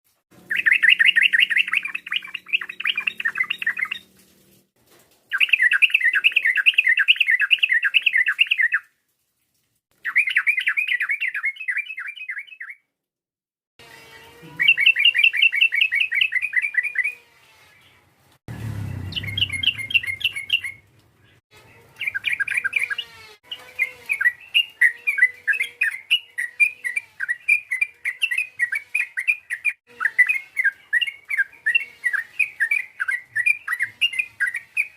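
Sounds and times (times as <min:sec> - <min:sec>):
bulbul chattering: 0:18.8 - 0:20.9.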